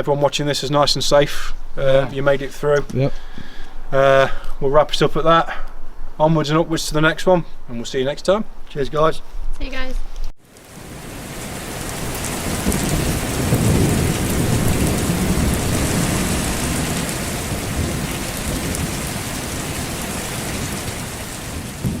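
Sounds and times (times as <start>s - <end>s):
rain hissing: 10.4s - 22.0s
thunder rumbling: 10.6s - 22.0s.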